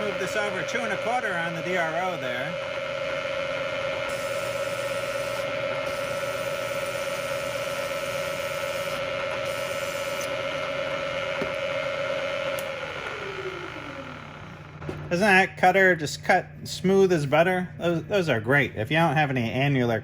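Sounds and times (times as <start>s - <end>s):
cutter drilling through steel: 0.0s - 14.8s
milling machine spindle tone: 0.0s - 15.2s.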